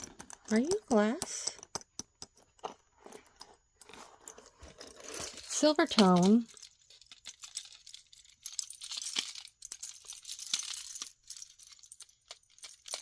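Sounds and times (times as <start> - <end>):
jewelry clicking and clinking: 0.0 - 13.0
crinkling packaging: 3.9 - 13.0.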